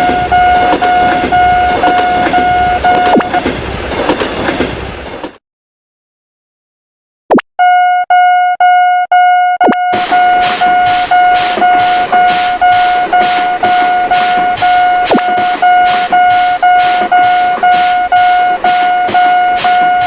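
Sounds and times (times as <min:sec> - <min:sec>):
railroad crossing alarm: 0:00.0 - 0:03.5, 0:07.6 - 0:20.0.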